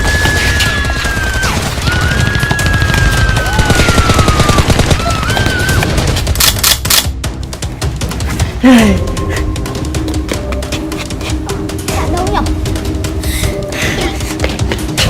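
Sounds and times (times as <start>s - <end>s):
automatic gunfire: 0.0s - 7.1s.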